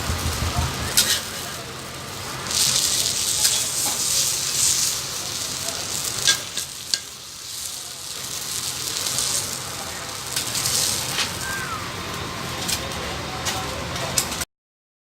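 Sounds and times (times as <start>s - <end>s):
sharp taps: 0.0s - 1.1s
frying hiss on griddle: 0.0s - 14.4s.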